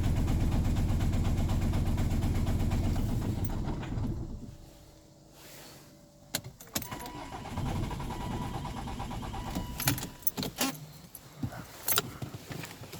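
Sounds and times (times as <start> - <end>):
engine cranking whirr: 1.3 - 4.7, 6.8 - 10.8
keys jangling: 9.7 - 12.2.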